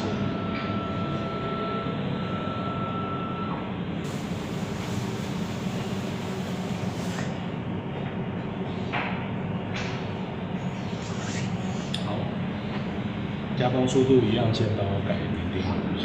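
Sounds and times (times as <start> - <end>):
machinery hum: 0.0 - 16.0
hiss: 4.0 - 7.3.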